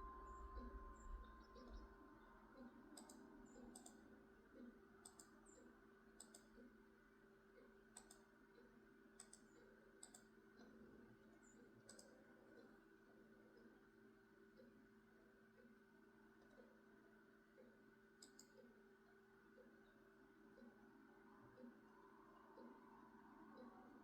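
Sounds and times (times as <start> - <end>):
steady low hum: 0.0 - 24.0
high-pitched clicks: 2.6 - 6.7, 18.2 - 18.7.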